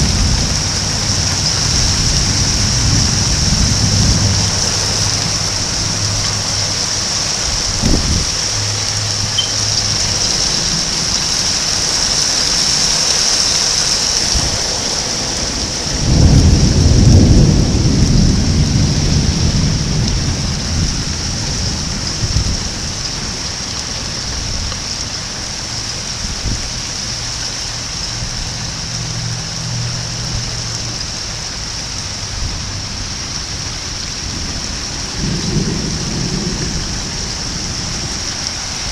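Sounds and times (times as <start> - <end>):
thunder clap: 0.0 - 8.9, 14.3 - 22.7
thunder rumbling: 0.0 - 25.2, 27.8 - 38.9
rain hissing: 0.0 - 38.9.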